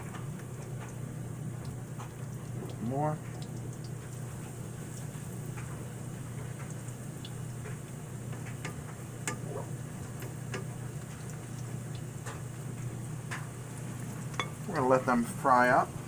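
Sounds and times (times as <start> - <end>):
pancakes sizzling in hot oil: 3.3 - 15.9.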